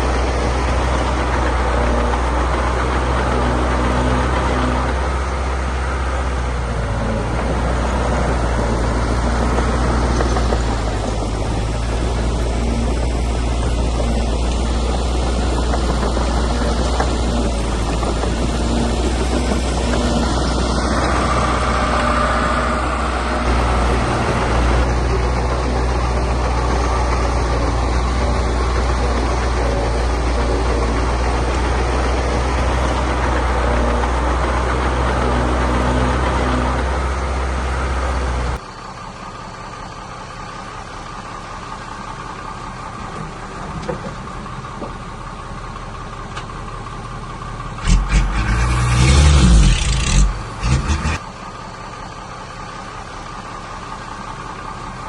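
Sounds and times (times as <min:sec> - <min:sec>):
low rumbling and knocks: 0:00.0 - 0:37.0
heavy diesel engine running: 0:00.0 - 0:55.0.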